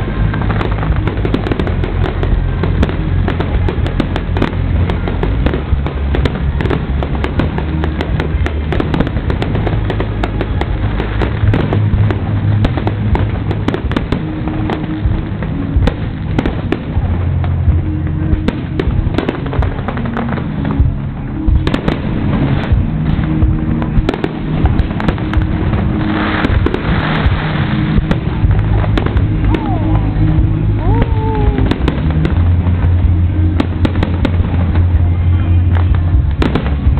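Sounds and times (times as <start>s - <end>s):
fireworks bangs and crackles: 0.0s - 36.9s
music playing: 0.0s - 36.9s.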